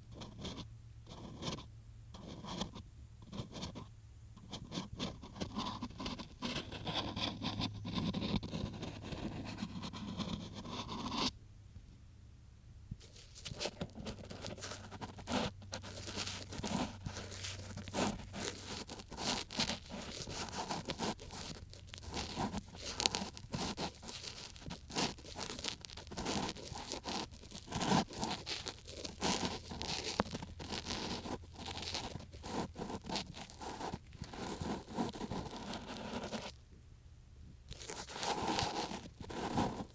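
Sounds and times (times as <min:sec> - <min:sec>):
ear pick scraping microphone: 0:13.0 - 0:36.6, 0:37.7 - 0:39.9.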